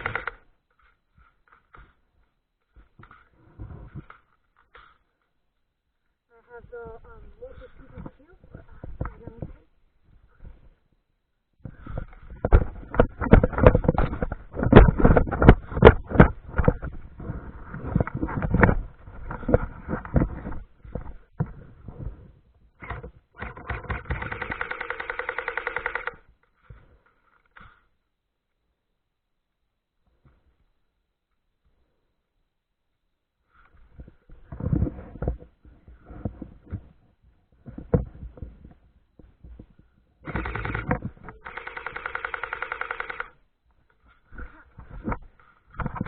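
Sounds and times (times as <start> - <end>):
rustling: 11.6 - 28.0, 33.4 - 46.0
airsoft gun firing full-auto: 24.0 - 26.2, 40.3 - 43.3.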